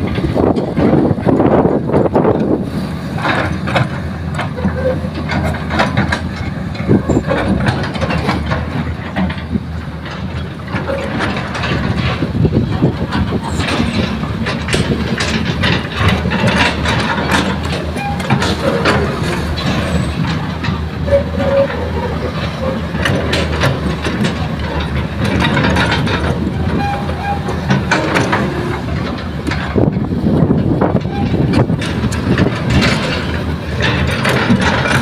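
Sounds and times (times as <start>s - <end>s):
excavator diesel engine running: 0.0s - 35.0s
metallic clanks and knocks: 3.2s - 35.0s.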